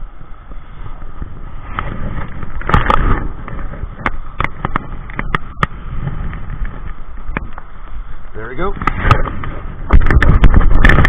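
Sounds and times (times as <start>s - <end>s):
river current rushing: 0.0s - 11.0s
wind on microphone: 0.0s - 11.0s
sharp clicks and knocks: 1.7s - 7.7s, 8.8s - 11.0s.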